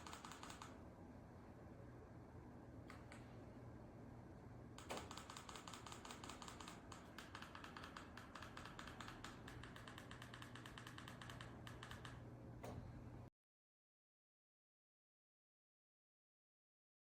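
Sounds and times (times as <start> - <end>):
typing on computer keyboard: 0.0 - 0.8, 4.8 - 12.3
steady low hum: 0.0 - 13.3.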